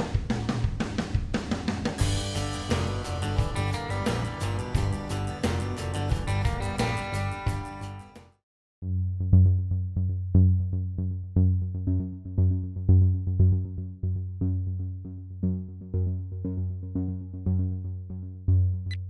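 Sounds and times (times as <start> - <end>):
drum machine hits: 0.0 - 6.8
heavy bass line: 2.0 - 8.1, 8.8 - 19.0.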